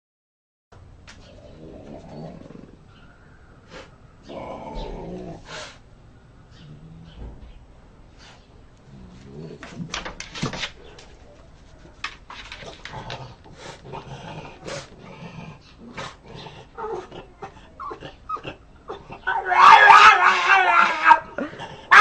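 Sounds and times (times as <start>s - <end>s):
dog growling and whining: 1.4s - 2.8s, 4.3s - 5.5s, 14.0s - 22.0s.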